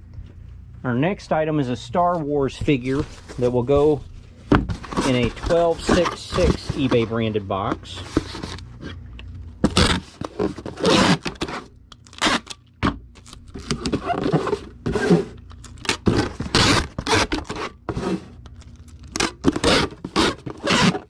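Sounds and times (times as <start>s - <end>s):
cardboard scraping and rustling: 2.0s - 9.0s, 9.6s - 12.5s, 13.2s - 21.0s
cardboard tearing: 4.7s - 7.2s, 9.6s - 12.6s, 13.2s - 21.0s.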